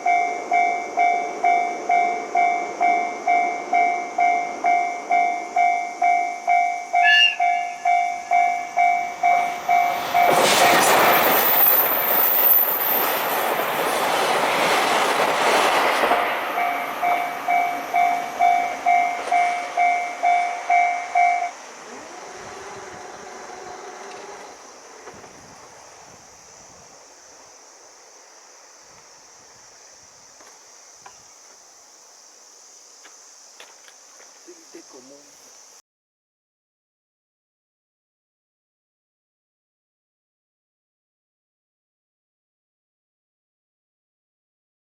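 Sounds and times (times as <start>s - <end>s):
level crossing warning bell: 0.0s - 10.8s, 16.5s - 21.6s
passing train rushing rumble: 0.0s - 31.0s
train horn: 6.9s - 10.9s.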